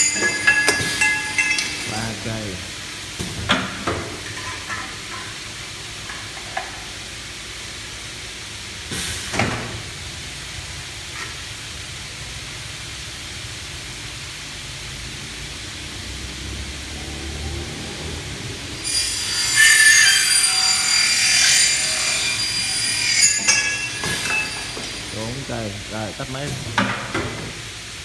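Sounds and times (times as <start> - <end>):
cutting saw running with hiss: 0.0 - 3.0, 15.0 - 27.0
saw sweep: 18.8 - 26.3.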